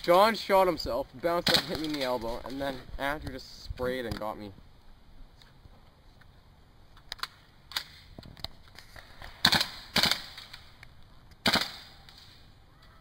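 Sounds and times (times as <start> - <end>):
airsoft guns firing: 1.4 - 2.1, 9.2 - 10.7, 11.4 - 12.4.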